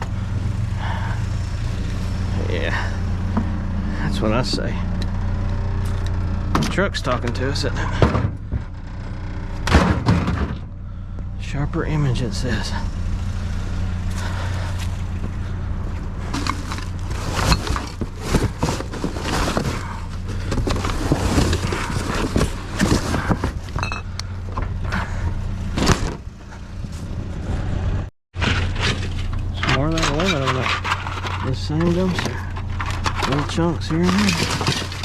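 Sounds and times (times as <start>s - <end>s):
vehicle engine idling: 0.0s - 35.0s
debris knocking and clattering: 9.6s - 10.7s, 16.2s - 25.2s, 28.4s - 35.0s.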